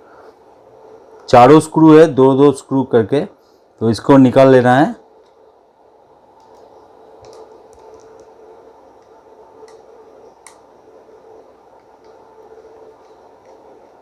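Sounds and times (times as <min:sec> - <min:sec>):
faint steady hum: 0:00.0 - 0:14.0
small sharp clicks and taps: 0:06.4 - 0:08.3.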